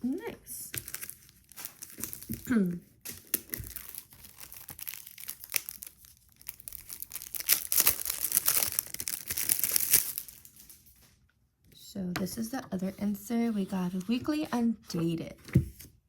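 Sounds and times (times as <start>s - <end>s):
packaging crinkling: 0.7s - 11.2s.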